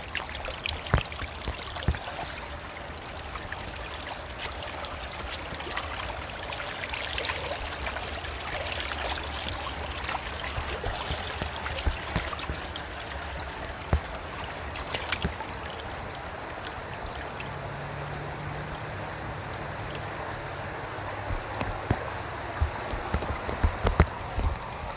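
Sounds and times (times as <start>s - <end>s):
river water rushing over stones: 0.0s - 24.9s
sharp splashes or knocks: 9.2s - 16.0s.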